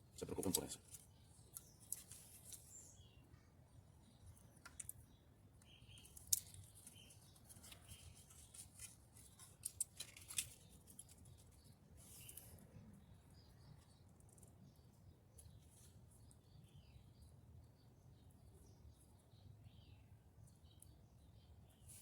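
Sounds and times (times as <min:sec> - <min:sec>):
light clicks of small parts: 0:00.2 - 0:02.8, 0:04.2 - 0:12.9.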